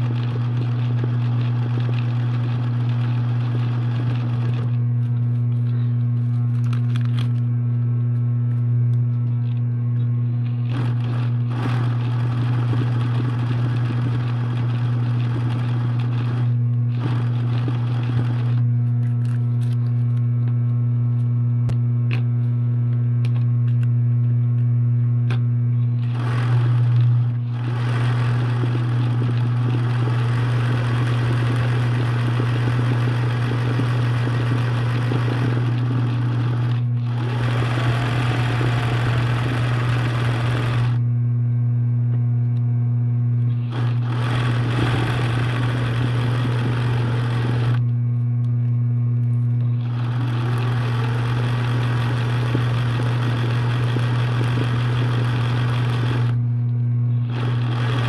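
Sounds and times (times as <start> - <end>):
sewing machine stitching: 0.0 - 4.8, 10.4 - 18.6, 26.0 - 41.0, 43.5 - 47.8, 49.7 - 56.4, 57.2 - 58.0.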